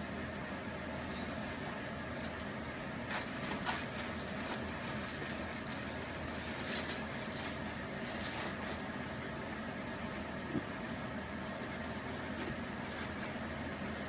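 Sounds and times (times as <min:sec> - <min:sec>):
steady background hum: 0:00.0 - 0:14.0
packaging rustling: 0:01.3 - 0:09.3.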